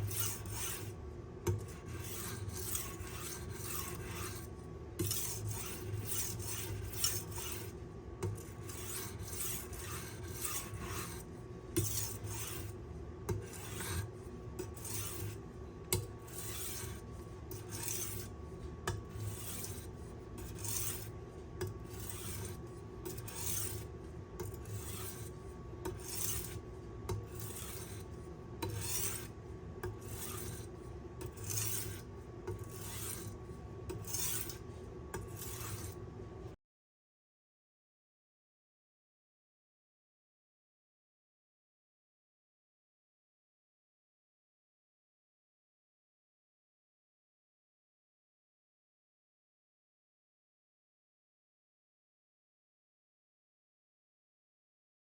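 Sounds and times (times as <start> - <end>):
knife scraping on sharpening stone: 0.0 - 36.0.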